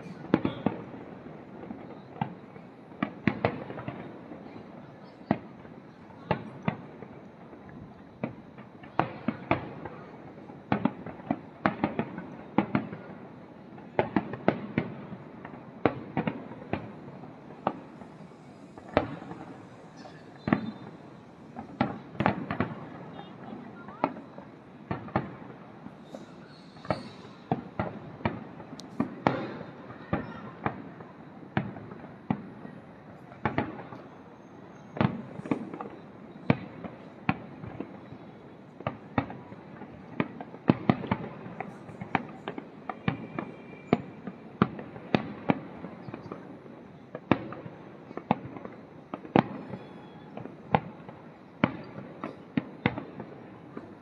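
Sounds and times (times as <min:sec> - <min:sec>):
fireworks rumble and crackle: 0:00.0 - 0:54.0
fireworks shells bursting: 0:15.9 - 0:24.2, 0:24.8 - 0:29.8.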